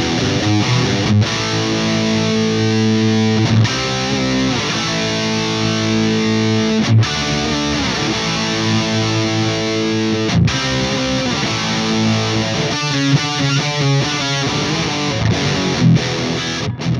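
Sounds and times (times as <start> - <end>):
overdriven electric guitar chords: 0.0 - 16.9.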